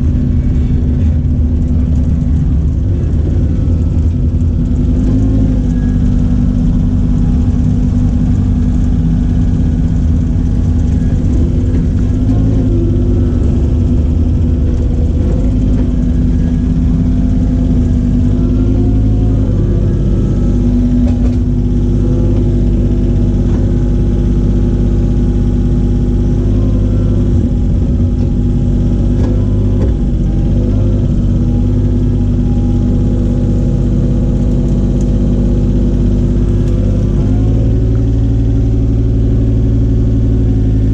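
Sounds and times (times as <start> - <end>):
engine running loudly: 0.0 - 40.9.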